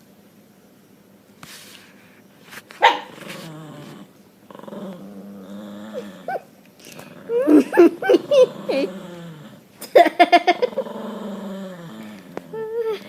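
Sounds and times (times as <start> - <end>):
dog barking: 2.8 - 3.2
dog yelping: 2.8 - 3.2, 7.3 - 8.9
dogs growling: 2.8 - 13.0.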